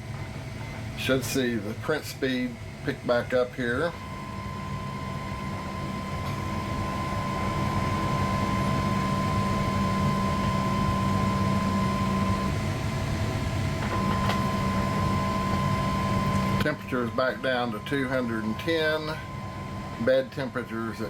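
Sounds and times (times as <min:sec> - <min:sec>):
low hum: 0:00.0 - 0:21.0.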